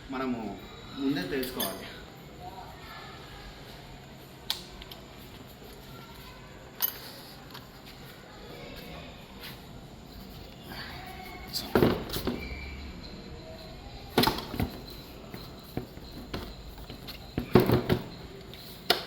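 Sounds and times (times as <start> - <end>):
parts knocking and clicking: 14.1 - 19.0.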